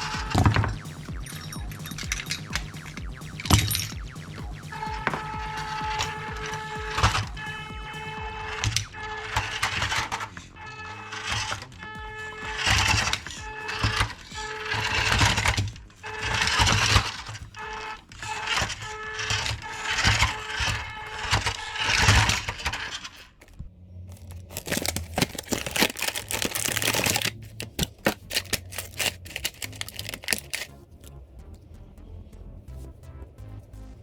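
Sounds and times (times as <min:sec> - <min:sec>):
background music: 0:00.0 - 0:21.2, 0:23.4 - 0:34.0
sharp clicks and rattles: 0:22.3 - 0:30.8.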